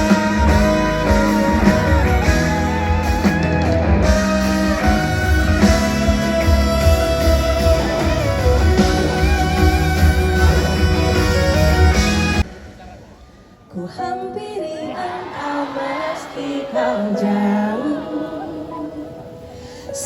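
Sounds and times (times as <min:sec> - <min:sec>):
heavy bass line: 0:00.0 - 0:12.5
wavering lead melody: 0:00.0 - 0:12.5
live band playing: 0:00.0 - 0:13.2.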